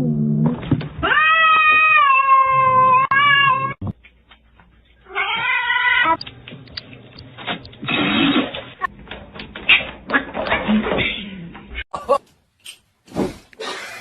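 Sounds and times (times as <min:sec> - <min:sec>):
cat yowling: 0:01.0 - 0:03.8.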